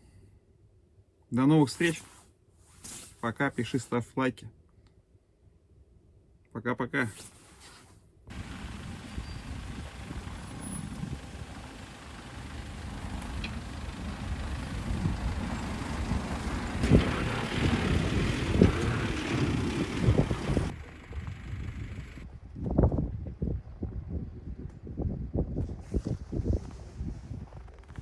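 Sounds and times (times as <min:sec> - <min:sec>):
vehicle rumble and road noise: 0:08.3 - 0:25.0.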